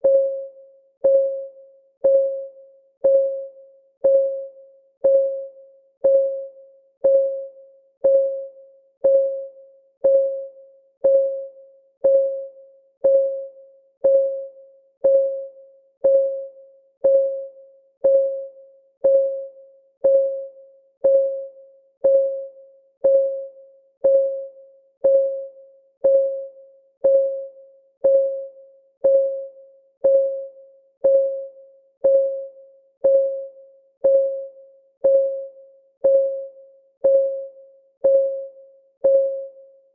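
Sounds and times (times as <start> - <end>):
timer ticking: 1.0 - 39.6.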